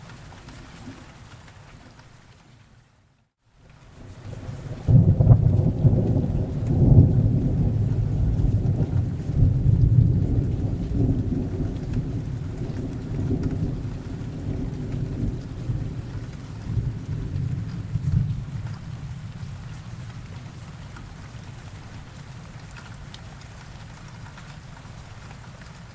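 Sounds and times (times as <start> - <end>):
steady rain: 0.0 - 25.9
thunder rumbling: 4.0 - 20.7.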